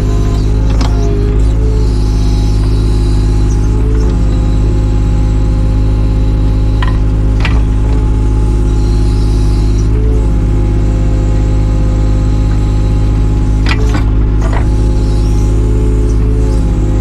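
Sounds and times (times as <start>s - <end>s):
excavator diesel engine running: 0.0s - 17.0s.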